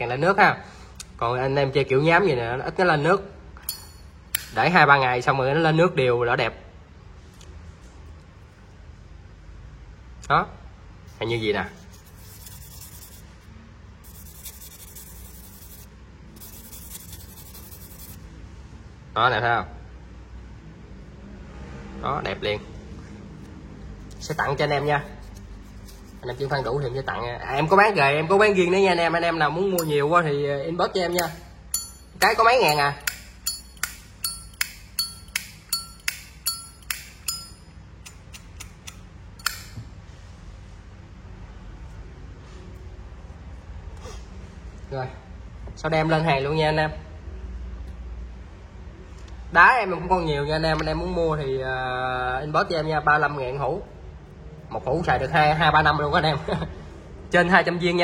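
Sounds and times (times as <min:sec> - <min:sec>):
abrasive pad rubbing metal: 0:14.0 - 0:18.2
lighter lid clinking open and shut: 0:38.0 - 0:39.8.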